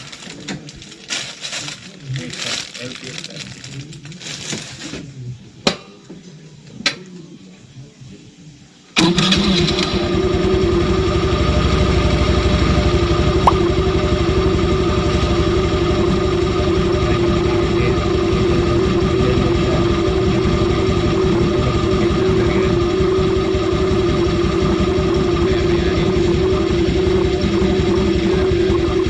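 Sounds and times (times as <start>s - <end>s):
scooter engine idling: 9.0s - 29.0s.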